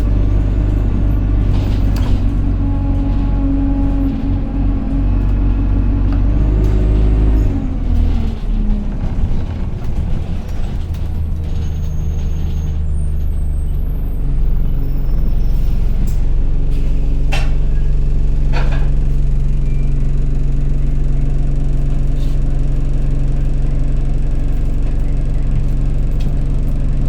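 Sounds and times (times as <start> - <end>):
bus engine whining: 0.0 - 27.0
air brakes hissing: 15.4 - 18.0.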